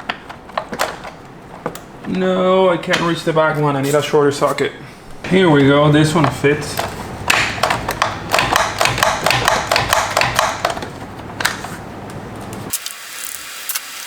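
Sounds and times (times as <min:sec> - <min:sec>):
socket ratchet clicking: 0:06.8 - 0:11.6.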